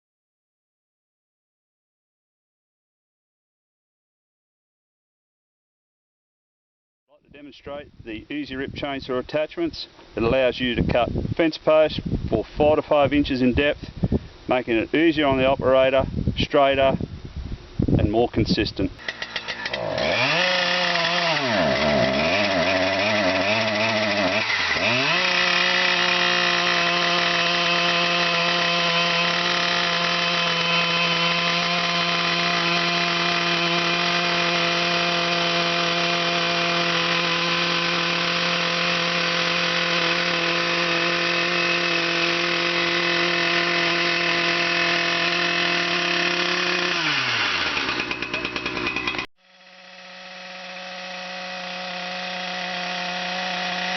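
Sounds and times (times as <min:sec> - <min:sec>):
chainsaw ripping wood: 0:19.0 - 0:53.9.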